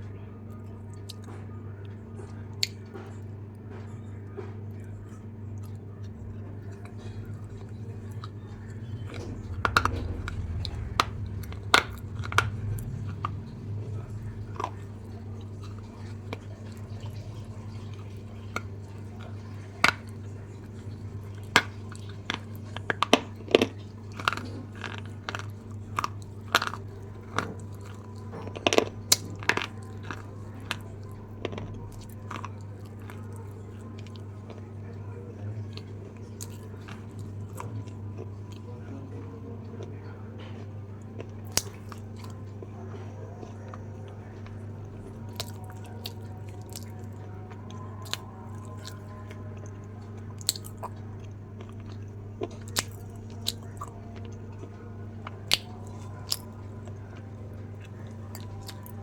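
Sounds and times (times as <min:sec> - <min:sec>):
steady low hum: 0:00.0 - 0:59.0
apple crunching and chewing: 0:00.5 - 0:59.0.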